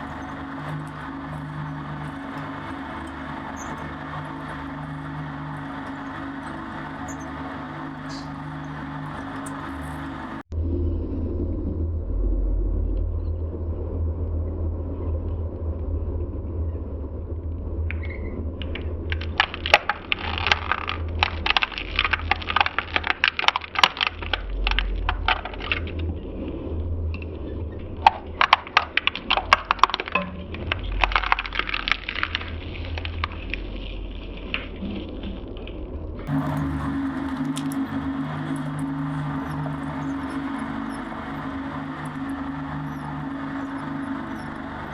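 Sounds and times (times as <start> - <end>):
electric shredder humming: 0.0 - 10.5, 36.2 - 44.9
shredder cutters cracking plastic: 19.1 - 25.9, 28.1 - 33.6.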